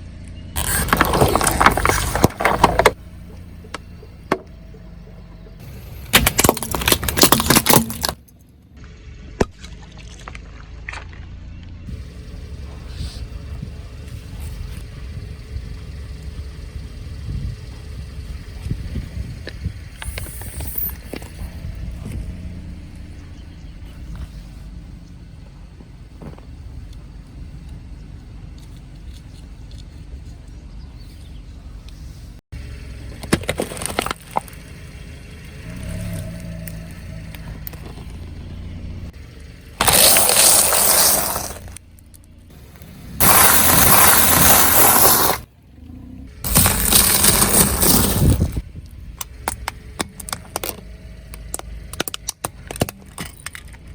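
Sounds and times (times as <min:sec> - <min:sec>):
car engine low rumble: 0:00.0 - 0:53.9
brittle object crunching under tyre: 0:00.6 - 0:03.1, 0:05.6 - 0:08.4, 0:33.1 - 0:34.9, 0:39.8 - 0:42.6, 0:46.4 - 0:53.9.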